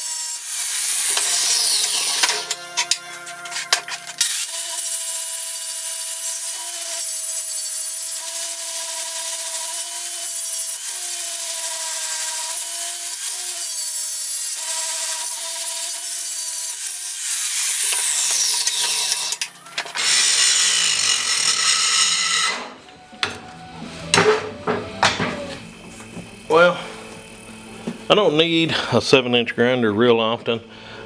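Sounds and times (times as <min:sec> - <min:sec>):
angle grinder grinding steel: 0:00.0 - 0:22.8.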